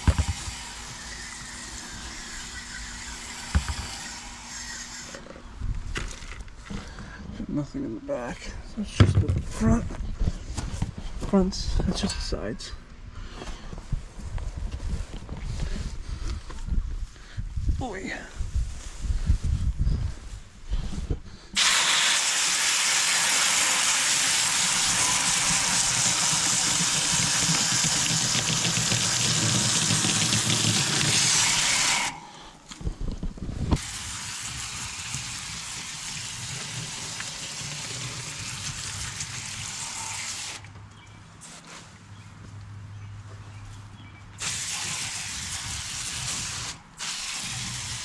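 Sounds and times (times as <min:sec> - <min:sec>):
garden hose spraying water: 0:00.0 - 0:05.3, 0:21.6 - 0:32.2, 0:33.6 - 0:40.8, 0:44.4 - 0:48.0.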